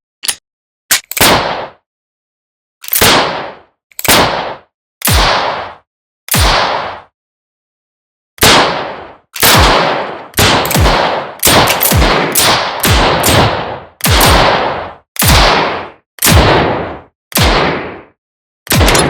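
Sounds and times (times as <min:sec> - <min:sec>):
revolver gunshots: 0:01.2 - 0:01.8, 0:03.0 - 0:07.1, 0:08.4 - 0:18.1, 0:18.7 - 0:19.0.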